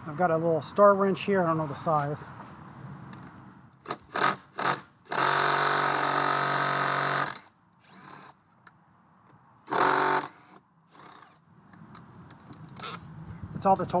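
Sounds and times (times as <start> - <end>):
electric drill-driver running: 9.7 - 11.4.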